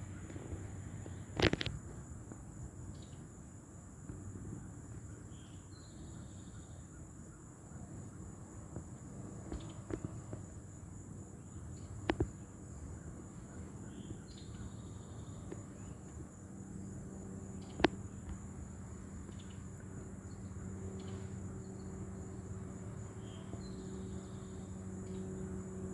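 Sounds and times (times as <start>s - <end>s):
steady low hum: 0.0s - 25.9s.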